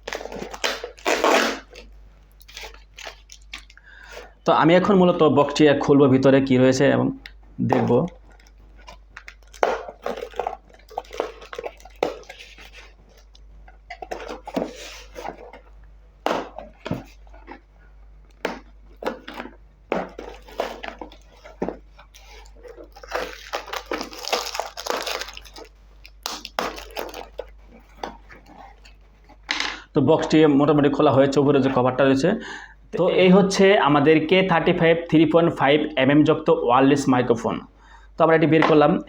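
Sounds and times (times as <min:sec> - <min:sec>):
packaging scraping and rustling: 0:00.0 - 0:04.4, 0:07.8 - 0:17.7, 0:18.3 - 0:29.5.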